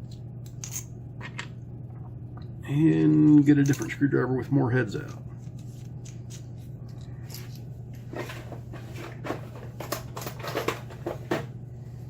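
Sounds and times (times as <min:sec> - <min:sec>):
steady low hum: 0:00.0 - 0:12.0
tools clicking and clacking: 0:03.0 - 0:04.0.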